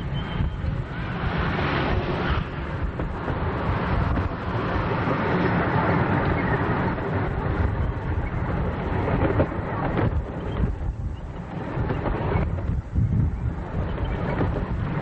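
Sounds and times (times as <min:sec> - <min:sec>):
miniature train rumble: 0:00.0 - 0:15.0
wind buffeting microphone: 0:00.0 - 0:15.0.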